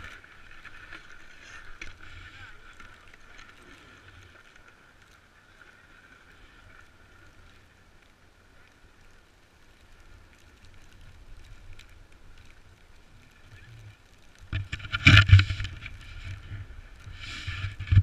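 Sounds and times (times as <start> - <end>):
snowboard sliding over snow: 0.0 - 18.0.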